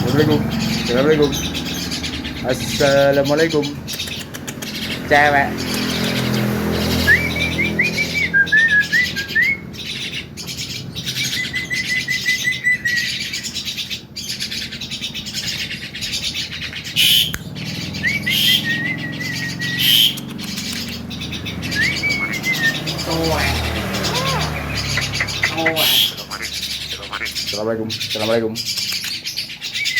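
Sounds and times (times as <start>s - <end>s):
bird chattering: 0.0s - 29.9s
harsh bird calls: 0.0s - 29.9s
bird whistles: 6.8s - 13.8s, 16.1s - 29.9s.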